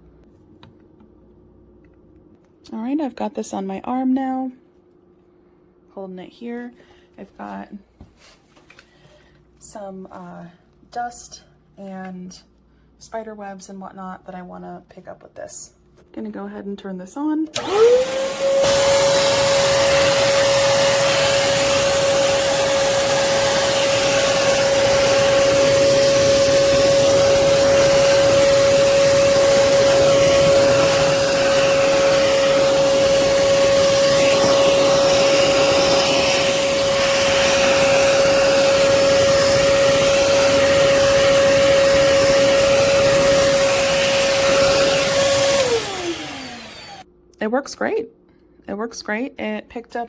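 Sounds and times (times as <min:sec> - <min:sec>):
vacuum cleaner whining: 0:17.6 - 0:47.1.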